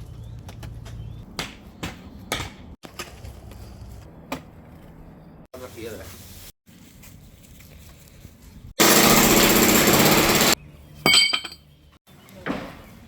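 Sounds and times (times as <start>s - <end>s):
concrete breaker hammering: 8.8s - 10.6s.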